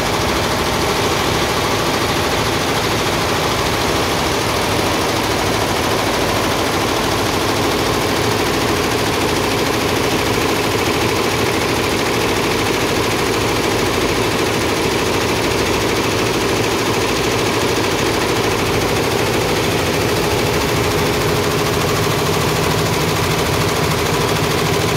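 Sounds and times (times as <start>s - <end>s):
embroidery machine needle clatter: 0.2s - 24.9s.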